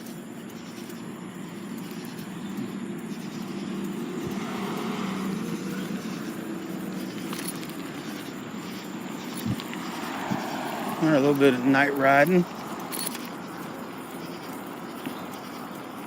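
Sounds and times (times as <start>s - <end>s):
low vehicle drone: 0.0s - 16.0s
car rushing by: 3.5s - 7.8s, 8.4s - 11.7s.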